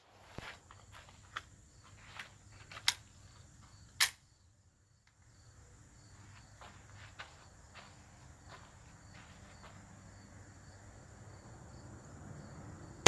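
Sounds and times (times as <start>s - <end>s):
insects droning: 0.0s - 13.0s.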